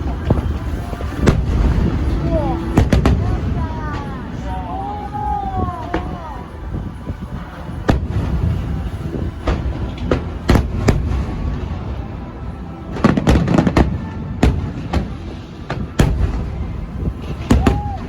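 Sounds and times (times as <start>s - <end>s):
fireworks bursting with sharp bangs: 0.0s - 18.0s
steady low rumble: 0.0s - 18.0s.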